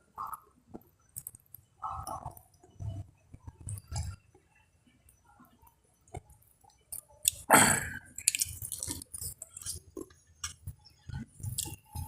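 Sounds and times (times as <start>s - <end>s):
wet chewing and mouth smacks: 6.1s - 12.0s.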